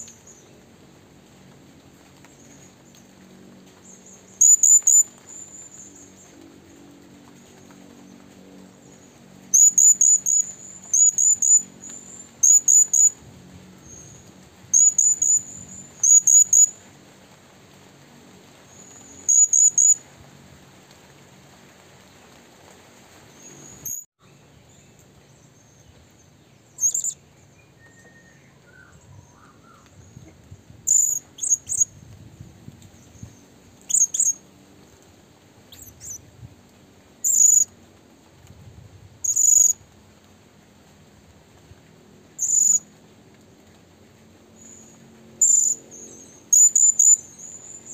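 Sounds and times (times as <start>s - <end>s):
faint high hum: 0.0s - 47.9s
bird chirping: 3.9s - 6.3s, 8.9s - 13.1s, 13.8s - 16.7s, 18.7s - 20.0s, 26.6s - 30.3s, 30.9s - 31.9s, 33.0s - 34.4s, 35.7s - 36.2s, 37.2s - 37.7s, 42.4s - 42.8s, 44.6s - 47.9s.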